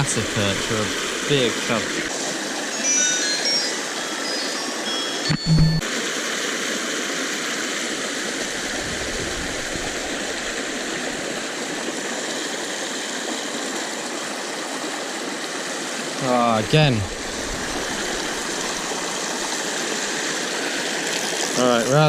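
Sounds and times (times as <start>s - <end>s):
river water rushing: 0.0s - 22.0s
low hum: 5.3s - 5.8s.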